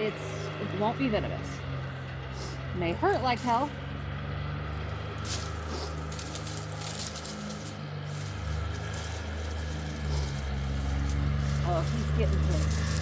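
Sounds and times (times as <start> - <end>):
low hum: 0.0 - 13.0
plastic netting rustling: 5.1 - 13.0.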